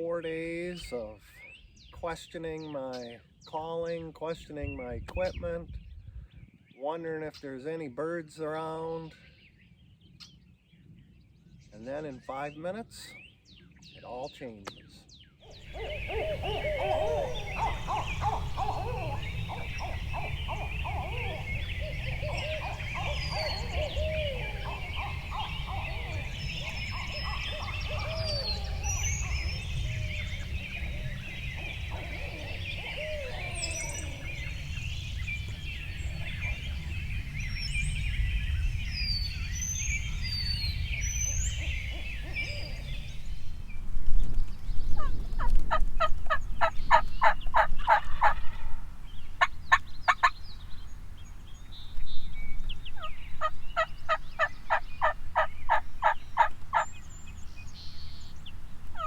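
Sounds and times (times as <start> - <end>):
small birds chirping: 0.0 - 59.0
wind rumbling on microphone: 4.3 - 6.8, 15.4 - 59.0
turkey yelps: 15.5 - 34.6, 46.3 - 48.8, 53.0 - 56.9.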